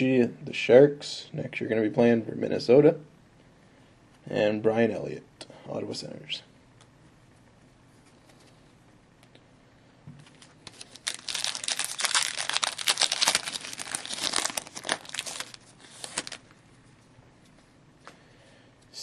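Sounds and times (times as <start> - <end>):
wrapper tearing and crinkling: 10.4 - 16.5.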